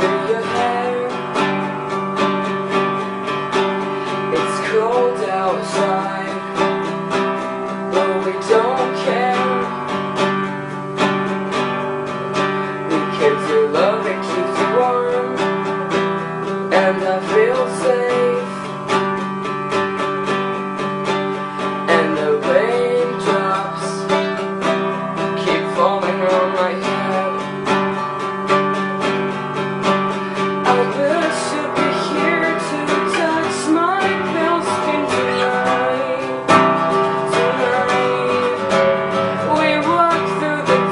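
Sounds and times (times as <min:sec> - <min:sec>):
acoustic guitar music: 0:00.0 - 0:40.9.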